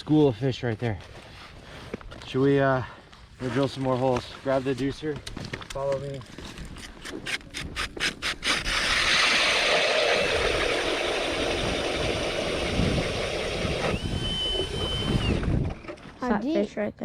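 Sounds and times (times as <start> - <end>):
ice auger drilling: 6.8 - 16.2
high steady whine: 9.2 - 16.0.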